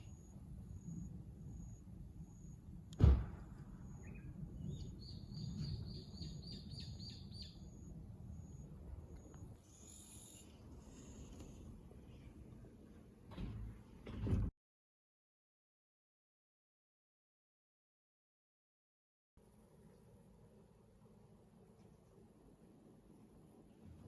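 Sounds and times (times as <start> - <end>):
low steady background noise: 0.0 - 14.3, 19.4 - 24.0
sharp knock: 3.0 - 3.5
bird chirping: 3.5 - 11.3.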